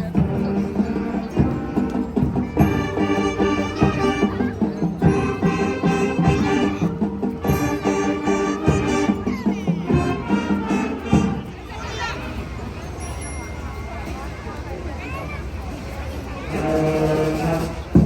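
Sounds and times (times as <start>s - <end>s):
wind band holding chords: 0.0s - 11.7s, 16.4s - 18.0s
drum strokes: 0.0s - 11.8s, 16.5s - 18.0s.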